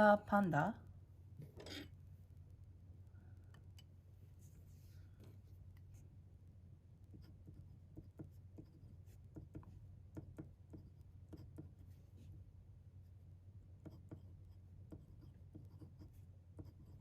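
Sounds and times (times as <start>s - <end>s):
low steady hum: 0.0s - 17.0s
pen scratching on paper: 7.1s - 12.3s, 13.8s - 17.0s.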